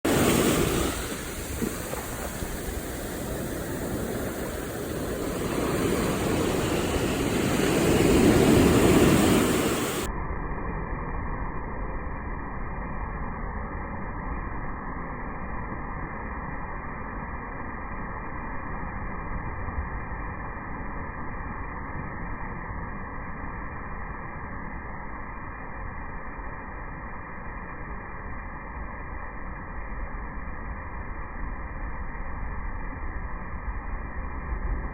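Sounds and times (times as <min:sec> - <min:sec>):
ocean surf washing: 0:00.0 - 0:10.1
wave breaking: 0:00.0 - 0:10.1.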